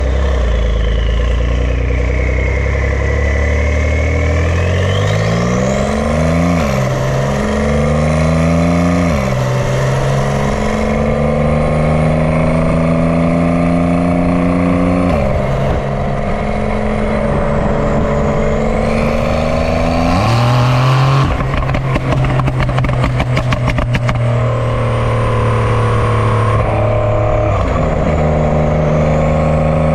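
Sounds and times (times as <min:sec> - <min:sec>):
sports car engine revving: 0:00.0 - 0:29.9
exhaust crackles and pops: 0:17.8 - 0:24.6
turbo whistle: 0:18.8 - 0:20.8.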